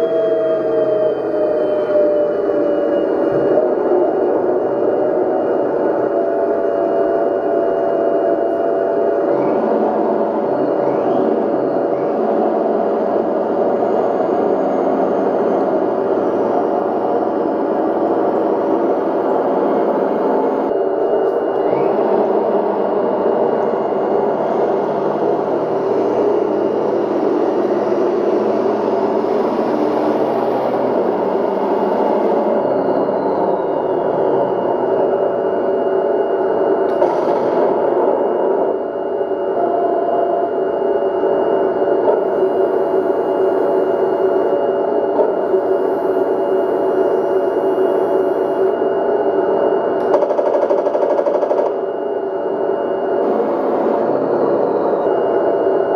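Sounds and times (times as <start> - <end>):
simulated tank engine through speaker: 8.4 - 34.7, 53.2 - 55.9.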